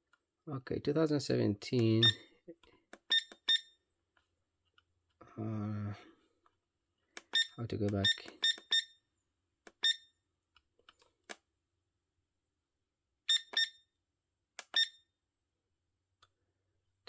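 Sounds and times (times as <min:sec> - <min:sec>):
alarm clock short high beeps: 0:02.0 - 0:02.2, 0:03.1 - 0:03.8, 0:07.4 - 0:09.0, 0:09.8 - 0:10.1, 0:13.3 - 0:13.8, 0:14.7 - 0:15.1.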